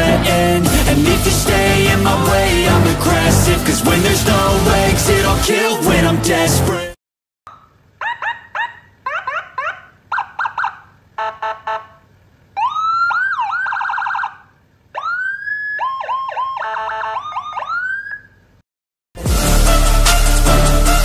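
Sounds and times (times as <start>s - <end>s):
electronic vehicle siren: 9.1s - 12.0s, 12.6s - 18.4s.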